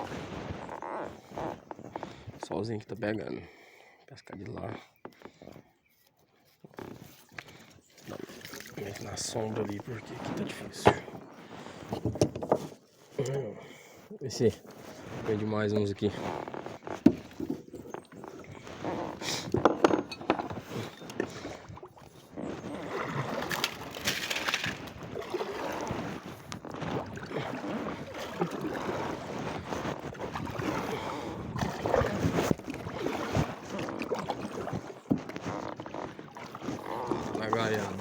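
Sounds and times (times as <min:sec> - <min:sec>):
paddle splashing in water: 0:06.9 - 0:12.9, 0:16.0 - 0:19.6, 0:20.3 - 0:38.0.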